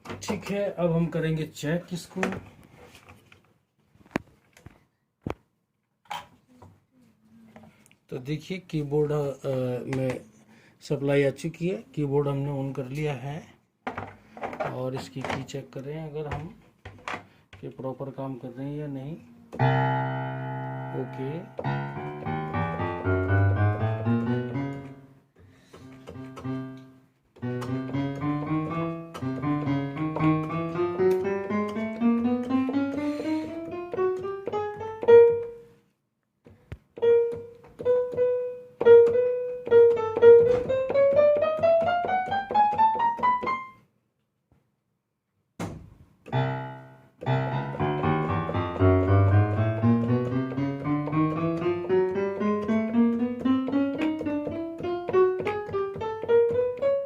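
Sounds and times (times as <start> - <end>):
piano notes in rising runs: 19.6 - 25.1, 46.4 - 53.7.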